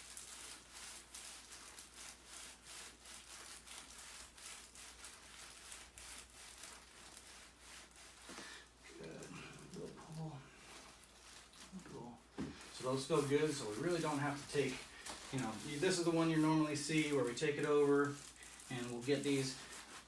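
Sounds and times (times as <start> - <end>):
hands rubbing over neck: 3.2 - 20.0.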